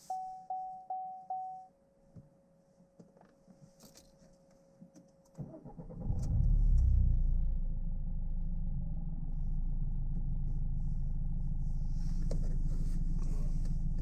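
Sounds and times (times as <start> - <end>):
car engine starting and idling: 5.4 - 14.0.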